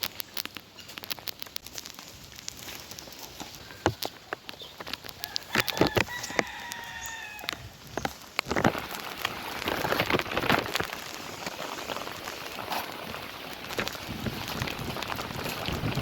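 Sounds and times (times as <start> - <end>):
rooster crowing: 5.2 - 7.8.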